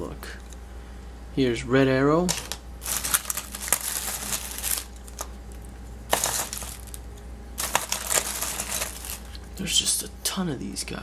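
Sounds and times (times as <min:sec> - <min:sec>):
plastic packaging crinkling: 0:02.4 - 0:09.5.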